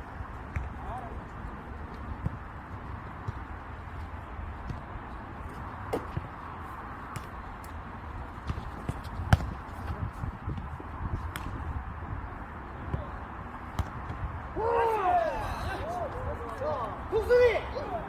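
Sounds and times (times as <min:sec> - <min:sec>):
ball kicked and bouncing: 0:00.4 - 0:00.8, 0:01.9 - 0:03.6, 0:04.6 - 0:04.9, 0:05.5 - 0:06.4, 0:07.1 - 0:07.8, 0:08.4 - 0:11.7, 0:13.7 - 0:14.3.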